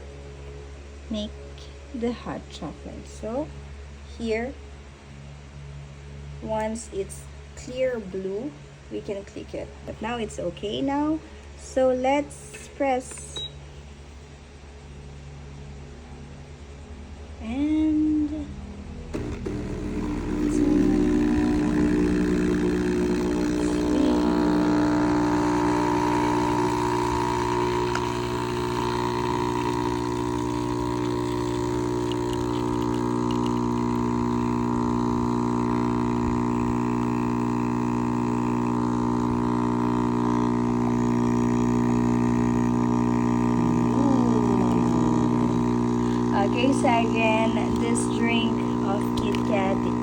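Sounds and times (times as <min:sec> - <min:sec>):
coffee machine pump humming: 0:19.1 - 0:50.0.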